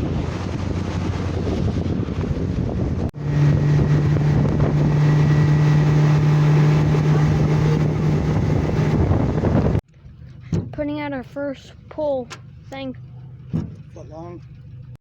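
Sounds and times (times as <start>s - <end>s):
wind on microphone: 0.0s - 9.8s
engine humming: 0.0s - 15.0s.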